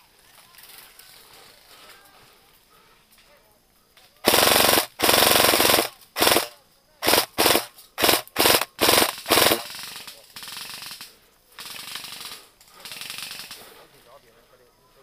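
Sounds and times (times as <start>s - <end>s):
airsoft guns firing bursts: 4.2s - 13.7s.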